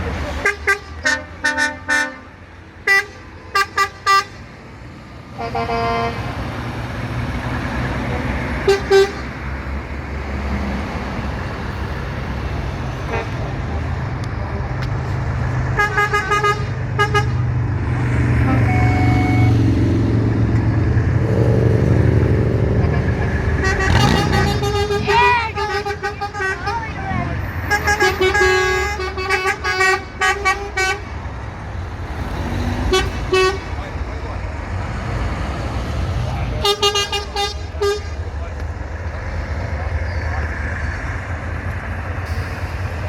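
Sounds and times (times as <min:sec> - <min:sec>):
truck engines rumbling: 0:00.0 - 0:43.0
truck horns tooting: 0:00.3 - 0:04.6, 0:05.3 - 0:06.6, 0:08.6 - 0:09.6, 0:11.7 - 0:14.6, 0:15.5 - 0:17.6, 0:18.2 - 0:20.3, 0:21.1 - 0:31.3, 0:32.2 - 0:34.1, 0:36.5 - 0:38.5.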